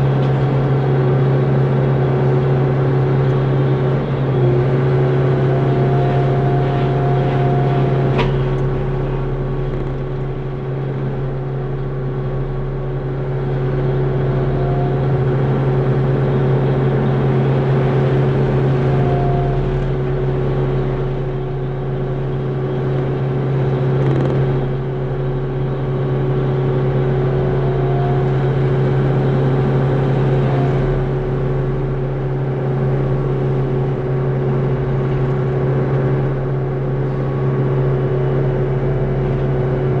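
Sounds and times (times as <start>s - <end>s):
excavator engine droning: 0.0s - 40.0s
faint mechanical whine: 0.0s - 40.0s.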